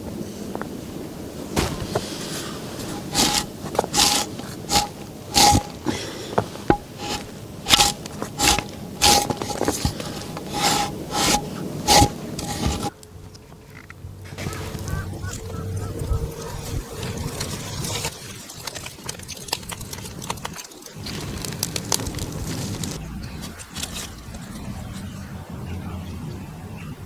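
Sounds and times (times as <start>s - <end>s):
hand tool scraping wood: 1.6s - 12.9s.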